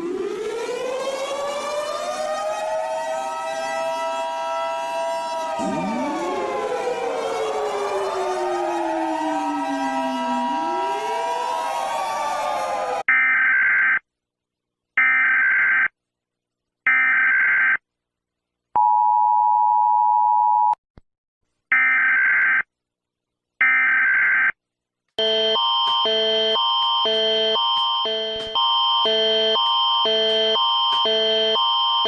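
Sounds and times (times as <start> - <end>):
gliding siren: 0.0 - 13.1, 25.2 - 32.0
two-note attention tone: 5.6 - 11.6
fast repeating alarm beeps: 25.2 - 32.0.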